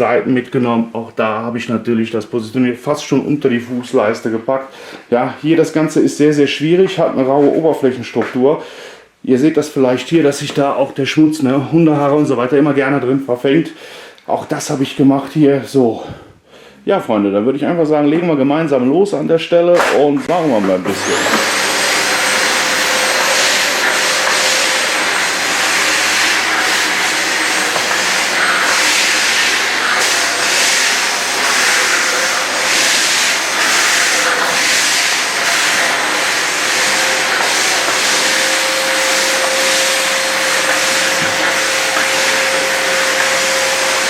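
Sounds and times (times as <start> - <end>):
vacuum cleaner suction hiss: 19.8 - 44.0.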